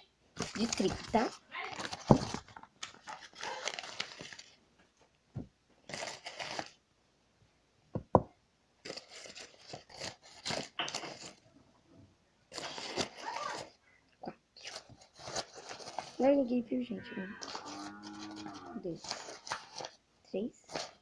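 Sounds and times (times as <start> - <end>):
flour rustling and scraping: 0.4 - 2.4, 17.3 - 20.0.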